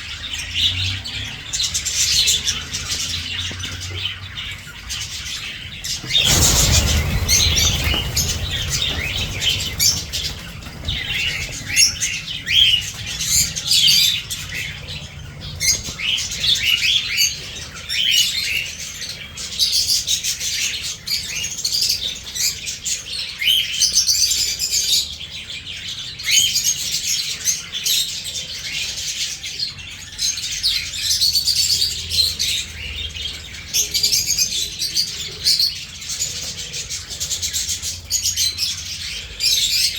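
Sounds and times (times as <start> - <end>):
small birds chirping: 0.0 - 39.9
low rumble: 5.7 - 12.9.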